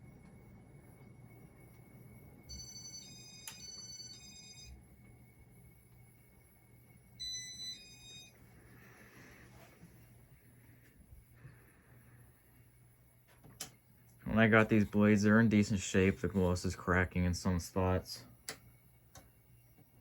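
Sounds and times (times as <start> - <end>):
ceiling fan humming: 0.0 - 20.0
electronic jingle of beeping tones: 7.2 - 8.4.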